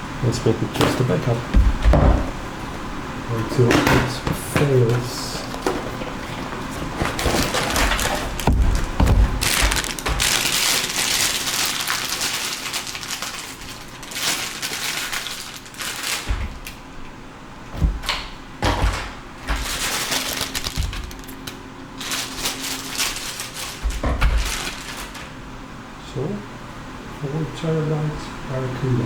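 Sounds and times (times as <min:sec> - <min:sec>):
plastic packaging crinkling: 0:04.9 - 0:16.9, 0:19.4 - 0:25.4.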